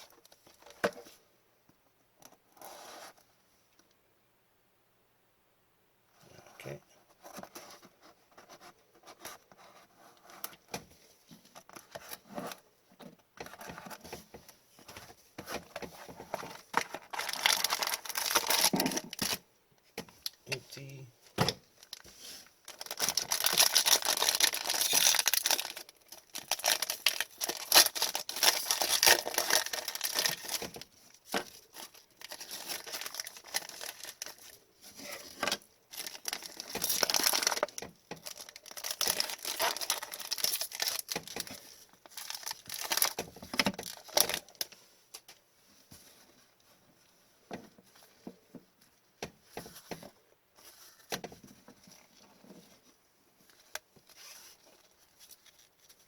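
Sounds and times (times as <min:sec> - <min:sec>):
card pack wrappers tearing: 0:16.8 - 0:19.4, 0:22.6 - 0:30.8, 0:31.7 - 0:34.6, 0:35.2 - 0:41.5, 0:42.1 - 0:43.2.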